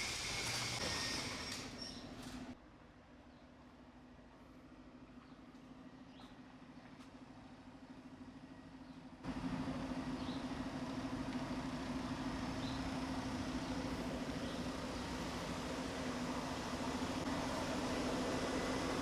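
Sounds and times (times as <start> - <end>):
truck diesel engine running: 7.8 - 19.0.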